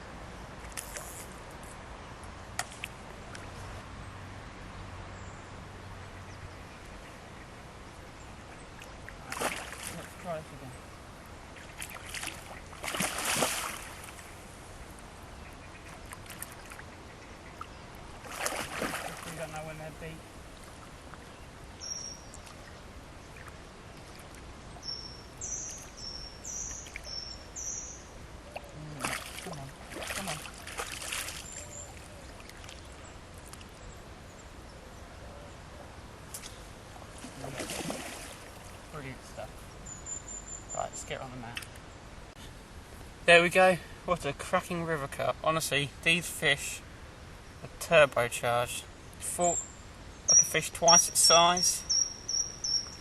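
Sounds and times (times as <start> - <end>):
flowing river water: 0.0 - 53.0
water splashing: 8.7 - 10.6, 11.5 - 15.1, 15.8 - 17.0, 17.6 - 21.4, 28.5 - 33.9, 36.3 - 39.3
low wash of water: 10.9 - 26.0, 36.0 - 38.9.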